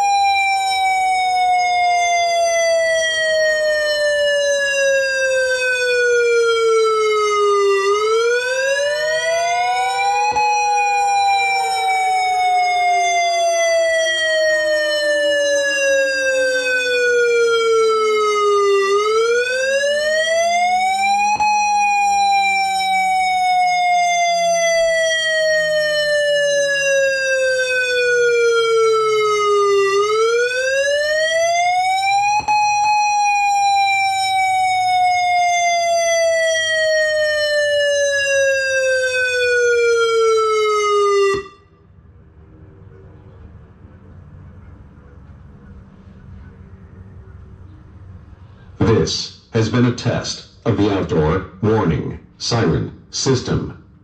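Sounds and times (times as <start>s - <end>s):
warning siren wailing: 0.0s - 43.1s
second siren steady tone: 0.0s - 49.4s.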